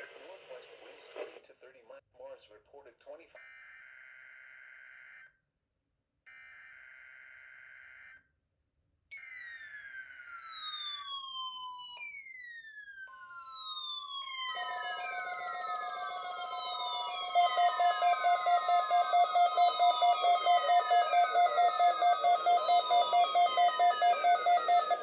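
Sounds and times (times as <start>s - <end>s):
falling siren-like sweeps: 9.2s - 25.0s
steady alert tone: 14.6s - 25.0s.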